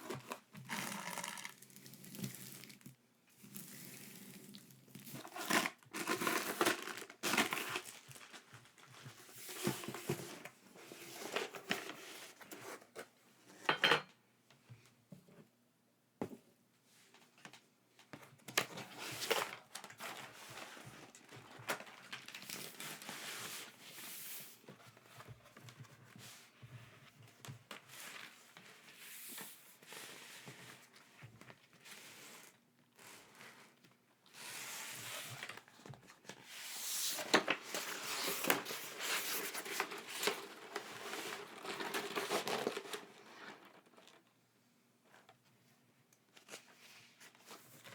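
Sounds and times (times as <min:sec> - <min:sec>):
packaging crinkling and tearing: 0:00.0 - 0:02.9, 0:05.2 - 0:08.9, 0:18.6 - 0:23.1, 0:37.4 - 0:44.2.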